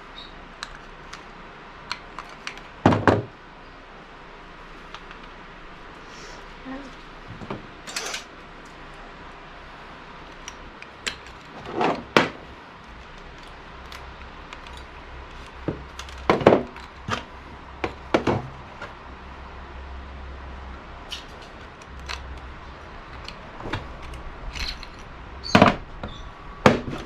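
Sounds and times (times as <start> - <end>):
metal parts and tools clinking: 7.8 - 9.0, 10.2 - 19.0, 21.0 - 27.0.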